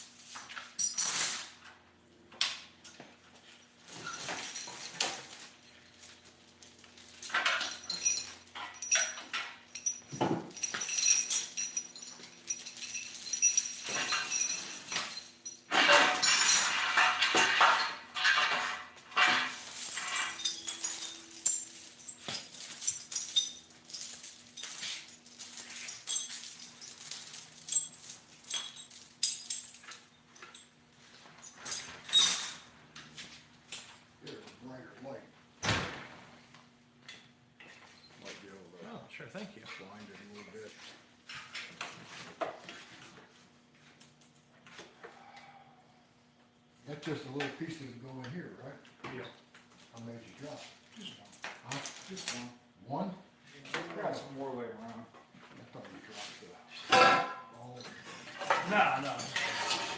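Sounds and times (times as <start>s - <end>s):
metal tools clinking and clattering: 0.4s - 1.3s, 3.9s - 30.7s, 49.8s - 52.6s, 56.7s - 59.9s.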